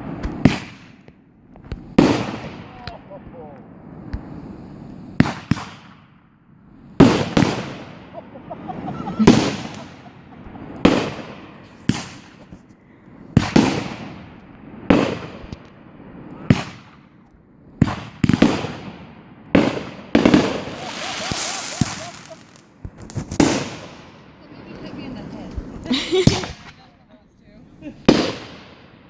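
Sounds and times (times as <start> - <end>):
fireworks bangs with echoing rumble: 0.0 - 6.4, 7.0 - 12.6, 13.2 - 24.4, 28.0 - 29.0.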